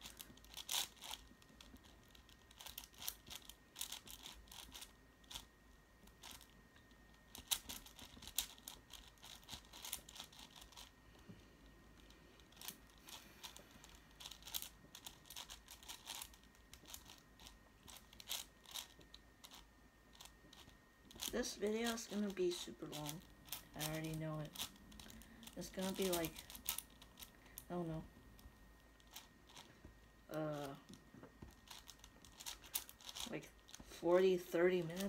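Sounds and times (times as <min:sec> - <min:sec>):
plastic puzzle cube clicking: 0:00.0 - 0:05.5, 0:07.3 - 0:10.9, 0:12.0 - 0:21.3, 0:31.6 - 0:33.8.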